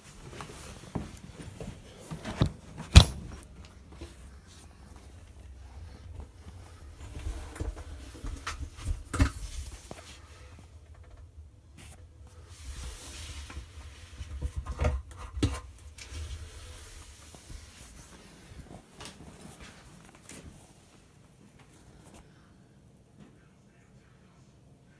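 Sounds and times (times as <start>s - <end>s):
handling knocks and clicks: 1.0s - 4.2s.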